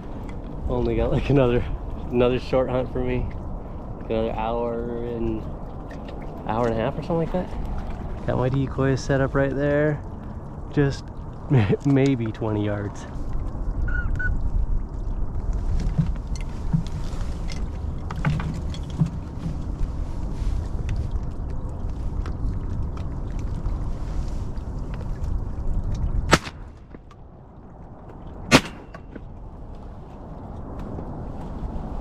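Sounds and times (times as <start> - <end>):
low rumbling noise: 0.0 - 32.0
shotgun shots: 26.3 - 26.8, 28.5 - 29.1.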